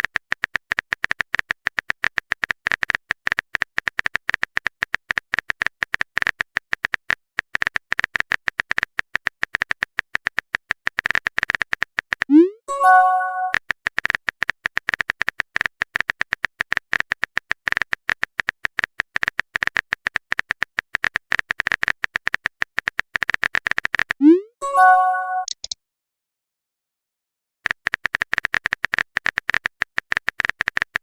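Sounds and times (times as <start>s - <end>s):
rapid keyboard taps: 0.0s - 12.3s, 13.6s - 24.2s, 27.7s - 31.0s
bright notification chime: 12.7s - 13.5s, 24.6s - 25.5s.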